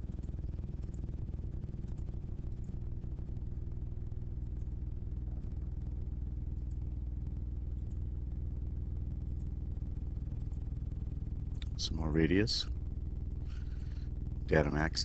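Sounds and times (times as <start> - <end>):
steady low hum: 0.0 - 15.0
faint ticks: 4.4 - 4.8.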